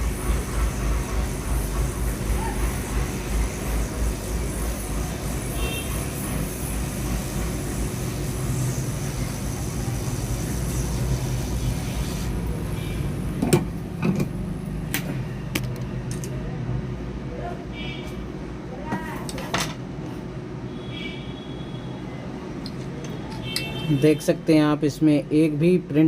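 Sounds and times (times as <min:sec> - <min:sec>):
hot air blower hissing: 0:00.0 - 0:15.4.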